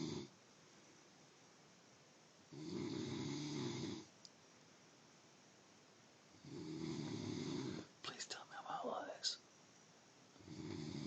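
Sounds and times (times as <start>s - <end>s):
person snoring: 0.0s - 0.3s, 2.5s - 4.1s, 6.4s - 7.9s, 10.4s - 11.0s.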